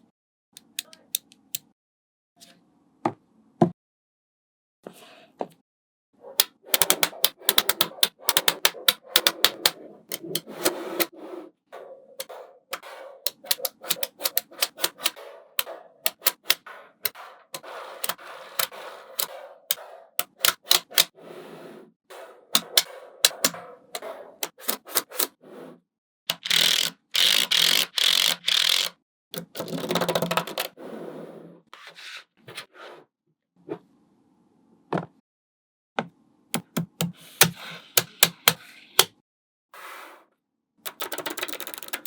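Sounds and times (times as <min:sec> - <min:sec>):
magnetic balls clicking together: 0:06.4 - 0:11.1, 0:13.3 - 0:16.7, 0:17.6 - 0:21.1, 0:22.6 - 0:23.6, 0:26.3 - 0:30.7, 0:40.9 - 0:42.0.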